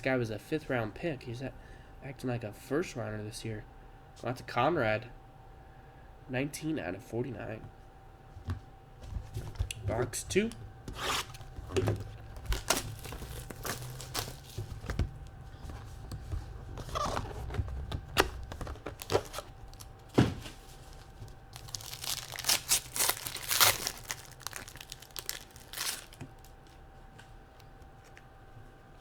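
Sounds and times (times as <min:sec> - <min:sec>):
plastic wrapper ripping and crinkling: 0:10.9 - 0:26.8
cardboard and cards knocking: 0:20.1 - 0:20.6.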